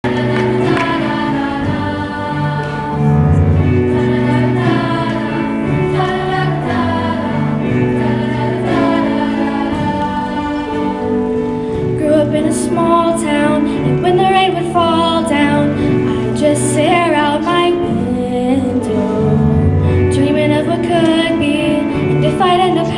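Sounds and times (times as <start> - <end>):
choir singing: 0.0 - 17.6.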